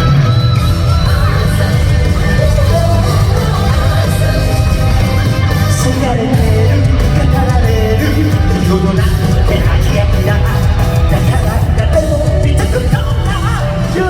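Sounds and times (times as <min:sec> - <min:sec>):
person singing: 0:00.0 - 0:14.0
rock band with heavy bass: 0:00.0 - 0:14.0.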